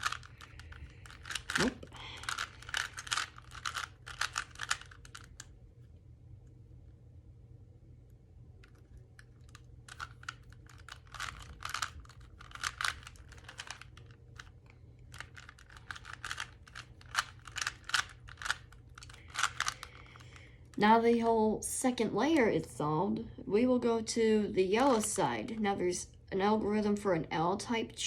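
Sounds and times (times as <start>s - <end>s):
puzzle cube clacking: 0.0s - 5.5s, 8.6s - 21.3s.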